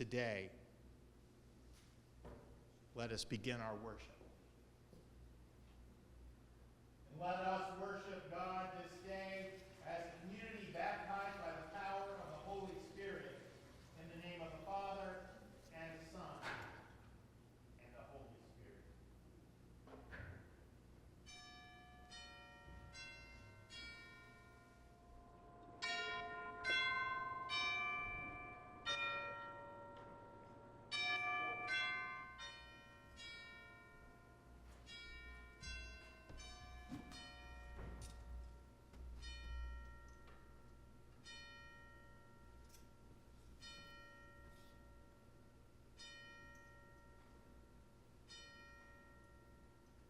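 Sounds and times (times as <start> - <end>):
bells playing a slow tune: 21.2 - 50.0.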